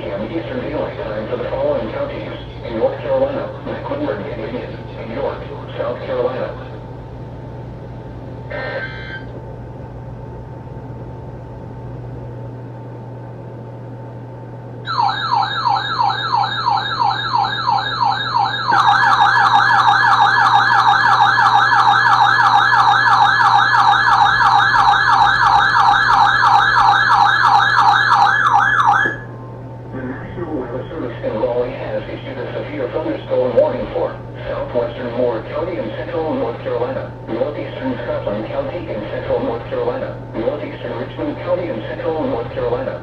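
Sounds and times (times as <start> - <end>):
steady low hum: 0.0 - 43.0
electronic alert siren wailing: 8.5 - 9.3, 14.8 - 29.3.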